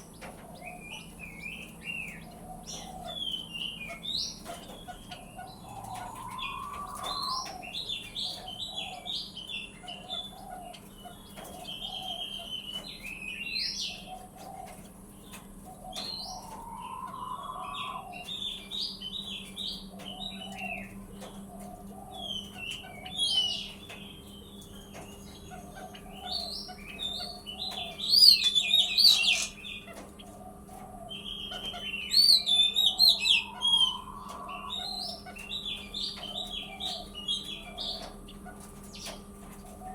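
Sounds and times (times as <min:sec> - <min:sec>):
birds chirping and warbling: 0:00.0 - 0:39.9
low pulsed bird calling: 0:04.9 - 0:09.0, 0:15.7 - 0:18.7, 0:26.0 - 0:38.1
lower rising bird call: 0:05.5 - 0:07.9, 0:15.9 - 0:18.5, 0:32.0 - 0:35.3.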